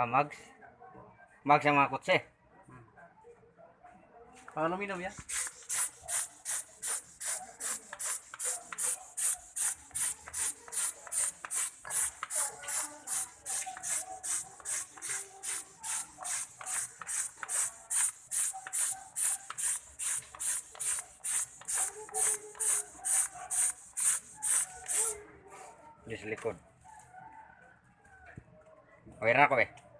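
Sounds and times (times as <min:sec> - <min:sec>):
hand pump sprayer hissing: 0:05.1 - 0:25.2.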